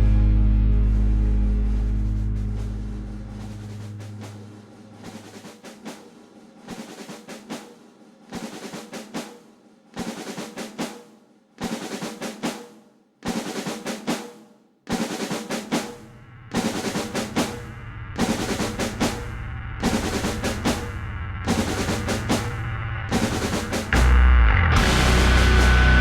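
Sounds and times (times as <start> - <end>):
held music chord: 0.0 - 5.0, 24.0 - 26.0
snare drum roll: 2.4 - 24.2, 24.8 - 26.0.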